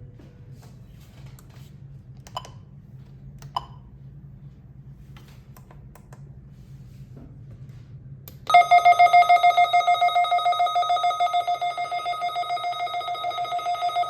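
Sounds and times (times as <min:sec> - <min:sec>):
rapidly pulsing electronic beep: 0:08.5 - 0:14.0.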